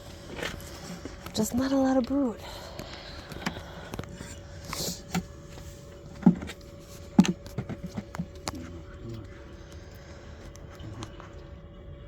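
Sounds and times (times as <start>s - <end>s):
wood knocking and scraping on wood: 4.8s - 8.8s.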